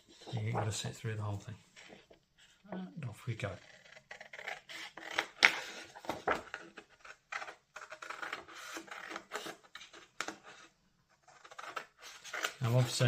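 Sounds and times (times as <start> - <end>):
card rustling: 0.1 - 2.6, 5.4 - 13.0.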